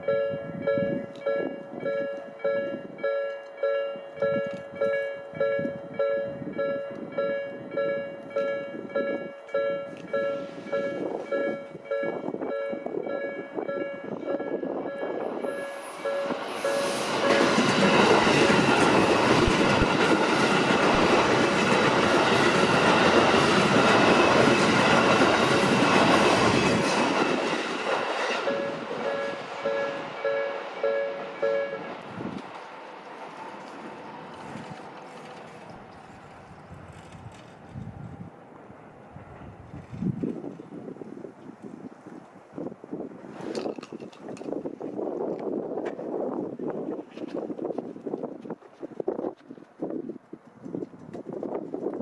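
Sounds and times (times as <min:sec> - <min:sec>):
level-crossing warning bell: 0:00.0 - 0:19.0, 0:27.2 - 0:32.0
train rumble and wheel noise: 0:00.0 - 0:52.0.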